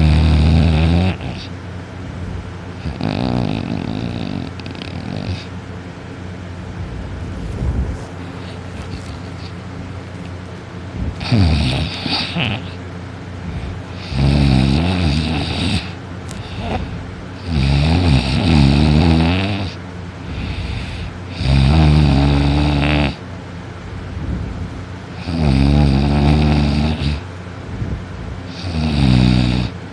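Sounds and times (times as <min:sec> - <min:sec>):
loud snoring: 0:00.0 - 0:01.5, 0:02.8 - 0:05.5, 0:11.2 - 0:12.8, 0:13.9 - 0:16.8, 0:17.4 - 0:23.2, 0:25.2 - 0:27.2, 0:28.5 - 0:29.8
quiet breathing: 0:20.2 - 0:21.3.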